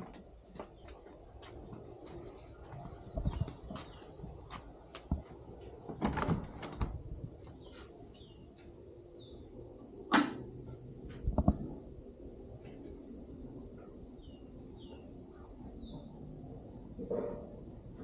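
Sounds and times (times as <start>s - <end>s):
small birds chirping: 0.4s - 9.6s, 13.6s - 16.5s
knocks and clunks: 3.1s - 7.1s.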